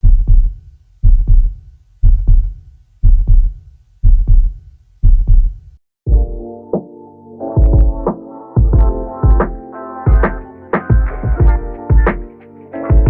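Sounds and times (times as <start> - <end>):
heartbeat thumps: 0.0 - 6.4, 7.6 - 12.3.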